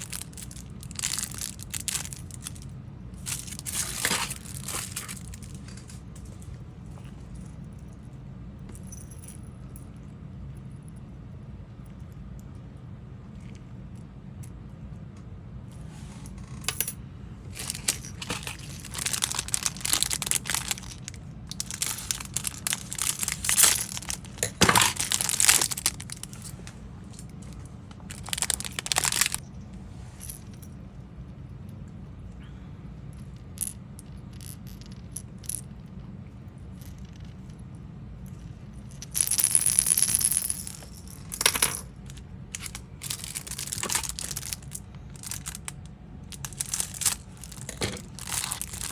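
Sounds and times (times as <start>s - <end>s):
plastic packaging crinkling: 0.0s - 2.6s, 3.2s - 6.0s, 17.5s - 26.7s, 28.0s - 29.4s, 42.6s - 45.8s, 46.4s - 48.9s.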